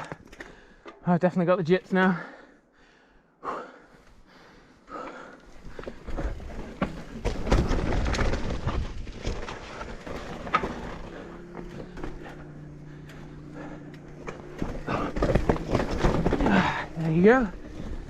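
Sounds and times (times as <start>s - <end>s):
bike rattling and knocking: 5.0s - 18.0s.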